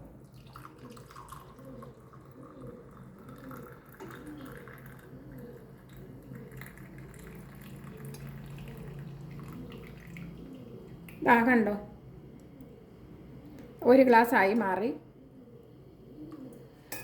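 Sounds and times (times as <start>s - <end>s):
liquid trickling and dripping: 0.2s - 5.1s, 5.8s - 11.2s.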